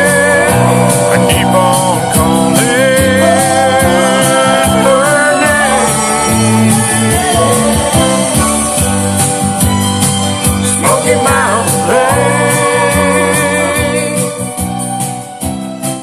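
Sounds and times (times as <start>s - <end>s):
country music: 0.0s - 16.0s.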